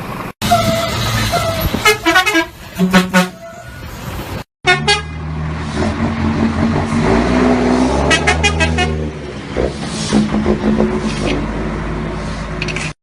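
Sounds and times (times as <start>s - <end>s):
vehicle horn toots: 0.4s - 3.8s, 4.6s - 5.2s, 8.0s - 9.0s
engine running: 4.1s - 12.9s.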